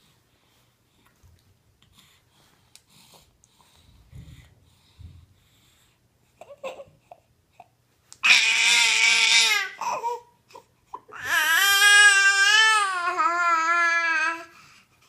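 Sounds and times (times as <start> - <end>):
baby screeching: 8.2 - 10.2, 11.1 - 14.5.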